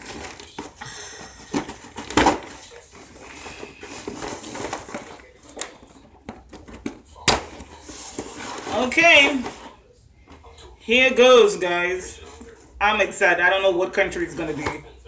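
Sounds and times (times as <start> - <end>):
cardboard rustling: 0.0 - 9.8
cardboard box knocks and clatters: 1.4 - 2.6.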